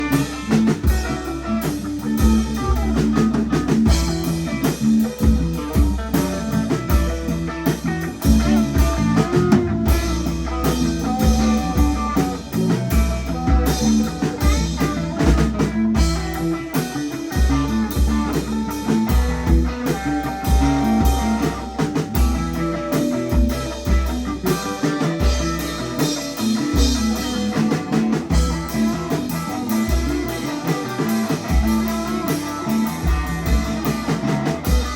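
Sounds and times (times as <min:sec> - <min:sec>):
bass guitar: 0:00.0 - 0:34.9
drum kit: 0:00.0 - 0:34.9
electric guitar: 0:00.0 - 0:34.9.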